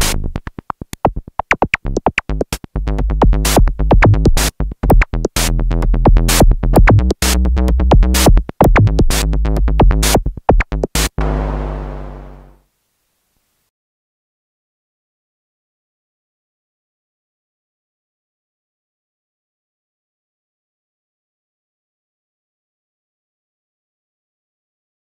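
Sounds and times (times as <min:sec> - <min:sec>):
drum machine beat: 0:01.4 - 0:05.4, 0:06.0 - 0:12.6
synthesizer bass line: 0:11.2 - 0:12.6.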